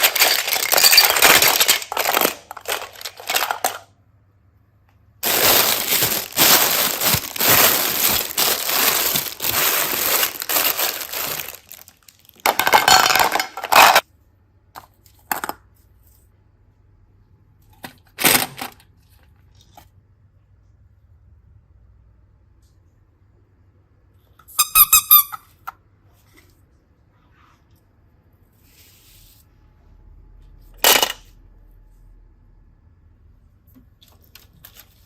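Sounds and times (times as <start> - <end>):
crinkling and crunching handling noise: 0.0 - 4.1, 4.9 - 14.0, 33.6 - 35.0.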